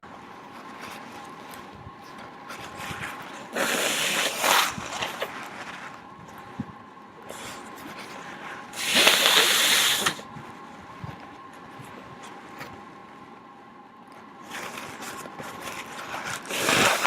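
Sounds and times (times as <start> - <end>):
nose blowing: 3.5 - 4.8, 8.8 - 10.2, 16.5 - 17.0.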